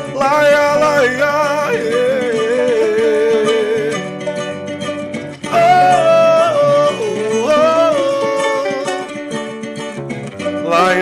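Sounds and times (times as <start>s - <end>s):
man singing wordless refrain: 0.0s - 4.2s, 5.4s - 9.4s, 10.6s - 11.0s
plucked string accompaniment: 0.0s - 11.0s.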